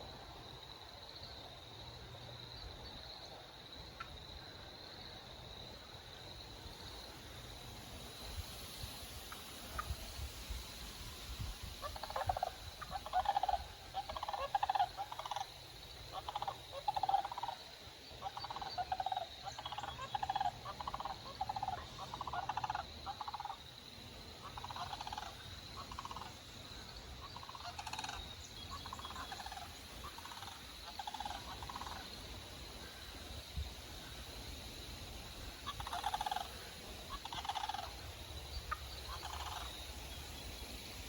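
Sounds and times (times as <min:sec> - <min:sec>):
wild turkeys rattling calls: 0:09.3 - 0:10.1, 0:11.8 - 0:23.7, 0:24.4 - 0:33.2, 0:35.4 - 0:40.3.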